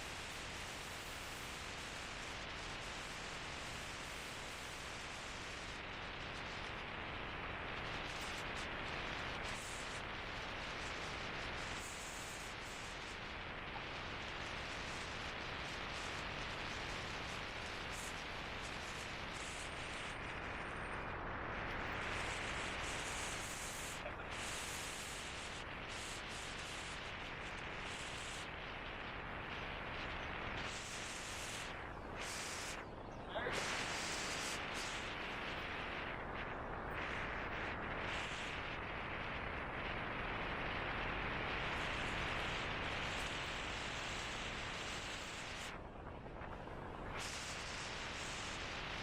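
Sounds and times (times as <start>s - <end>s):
wind on microphone: 21.6s - 49.0s.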